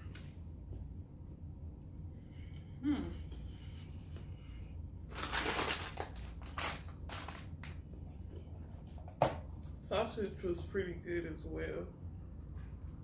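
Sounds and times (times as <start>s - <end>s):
rustling and crinkling handling: 5.1s - 9.2s.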